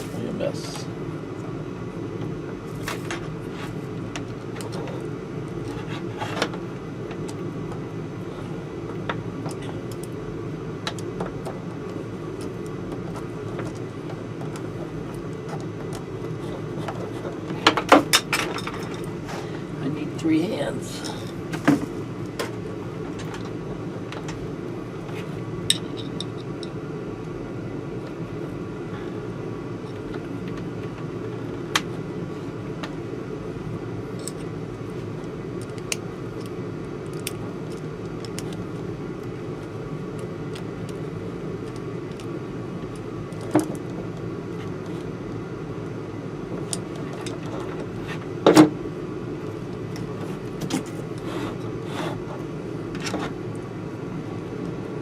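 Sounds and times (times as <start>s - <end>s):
steady low hum: 0.0s - 55.0s
clicks and knocks handling wires: 21.5s - 24.4s, 41.6s - 45.1s, 49.5s - 53.6s.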